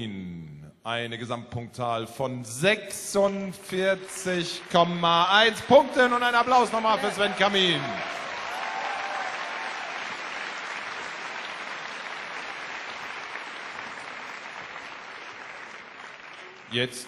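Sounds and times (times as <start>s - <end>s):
large audience applauding: 3.6s - 17.0s.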